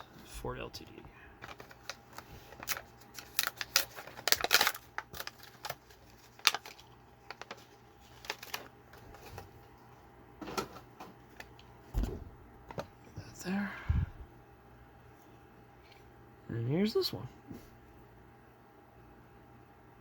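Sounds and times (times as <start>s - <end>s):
plastic packaging clicks and crackles: 1.4s - 9.5s.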